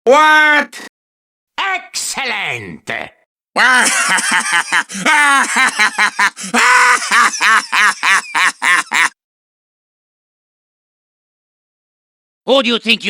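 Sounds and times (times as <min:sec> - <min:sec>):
person laughing: 0:03.6 - 0:09.2.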